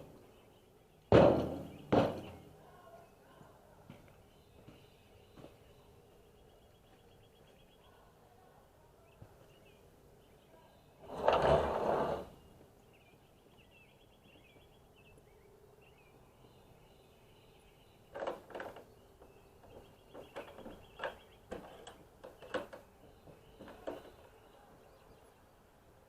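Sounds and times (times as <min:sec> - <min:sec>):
birds chirping: 0:00.0 - 0:26.0
sharp knocks: 0:01.1 - 0:02.4.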